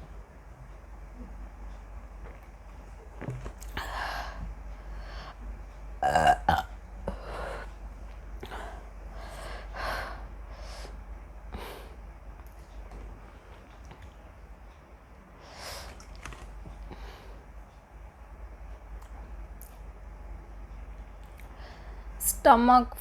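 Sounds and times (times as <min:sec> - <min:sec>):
woman breathing: 0:03.7 - 0:05.6, 0:07.0 - 0:07.8, 0:08.4 - 0:12.0, 0:16.8 - 0:17.5, 0:21.5 - 0:22.2
woman burping: 0:06.0 - 0:06.7.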